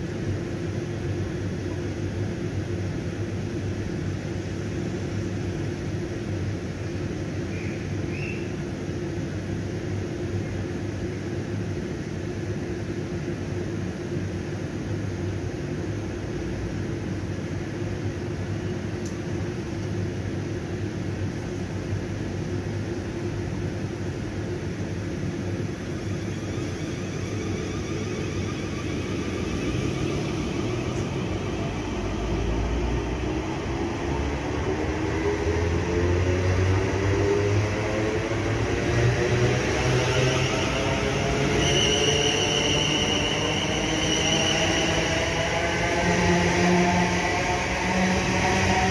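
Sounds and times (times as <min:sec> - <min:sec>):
train humming: 0:00.0 - 0:48.9
train whine rising in pitch: 0:25.4 - 0:48.9.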